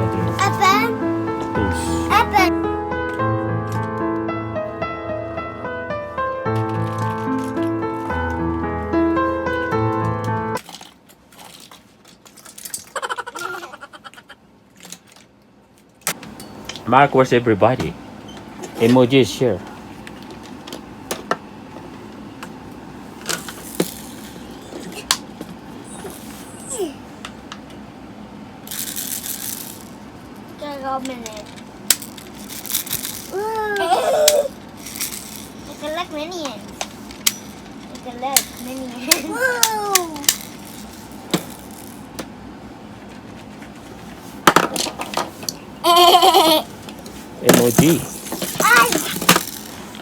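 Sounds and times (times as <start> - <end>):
low background hum: 0.0 - 50.0
objects clicking and knocking: 10.6 - 13.0, 23.2 - 25.3, 34.2 - 42.3, 47.0 - 50.0.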